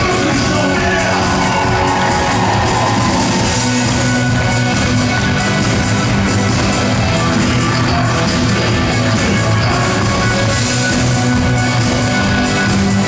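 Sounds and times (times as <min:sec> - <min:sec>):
live rock band playing: 0:00.0 - 0:13.0.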